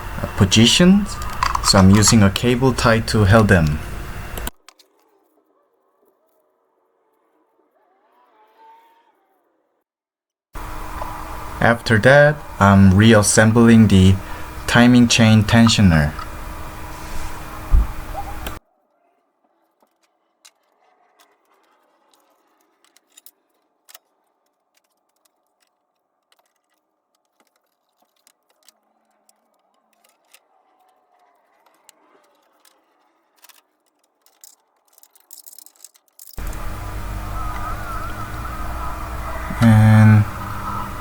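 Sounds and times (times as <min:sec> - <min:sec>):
loud steady sound: 0:00.0 - 0:04.5, 0:10.6 - 0:18.6, 0:36.4 - 0:41.0
small metal parts clinking: 0:01.2 - 0:01.7, 0:29.4 - 0:36.4.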